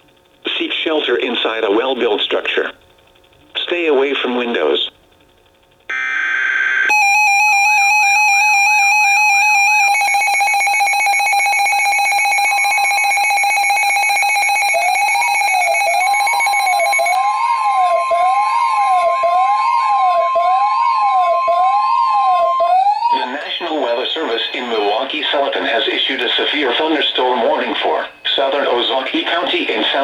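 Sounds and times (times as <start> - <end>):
electronic buzzing alarm tone: 5.9 - 25.0
siren-like warble: 5.9 - 25.1
steady high tone: 5.9 - 30.0.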